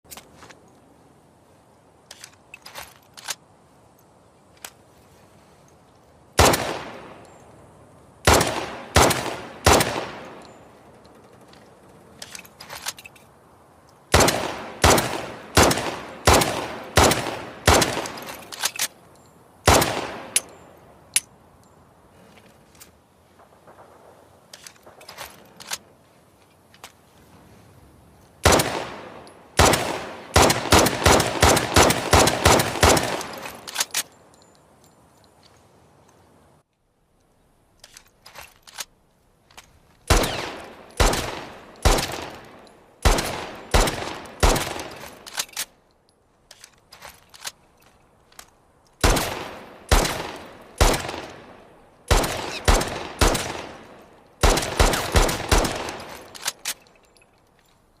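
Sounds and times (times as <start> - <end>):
pistol gunshots: 6.4 - 7.2, 8.2 - 10.4, 14.1 - 18.5, 19.6 - 20.5, 28.4 - 33.8, 40.1 - 45.3, 49.0 - 56.5.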